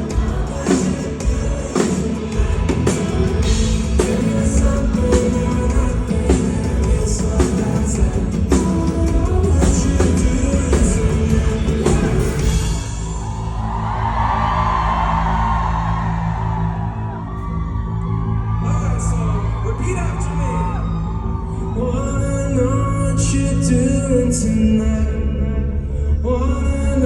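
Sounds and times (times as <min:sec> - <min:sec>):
live pop-rock band music: 0:00.0 - 0:13.7.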